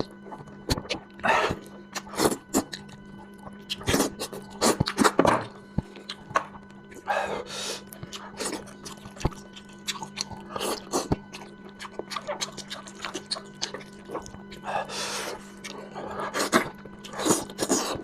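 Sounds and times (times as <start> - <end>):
wet chewing: 7.8 - 14.7, 15.3 - 18.0.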